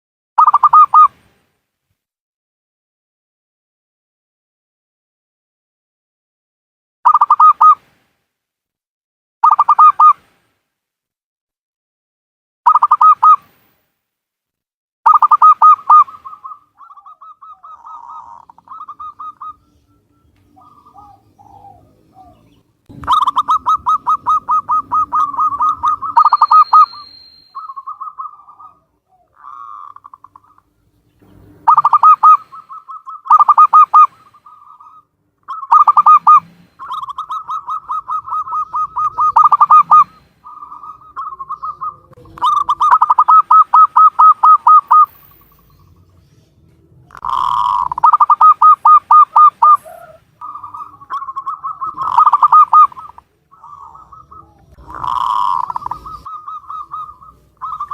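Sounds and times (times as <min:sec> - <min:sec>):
dove cooing: 0:15.1 - 0:46.2, 0:47.1 - 0:57.9.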